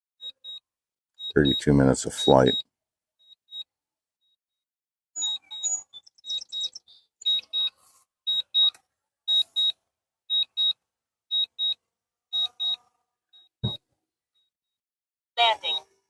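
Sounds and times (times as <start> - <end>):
remote controller beeping: 1.3 - 2.6, 5.2 - 9.7, 12.4 - 12.8.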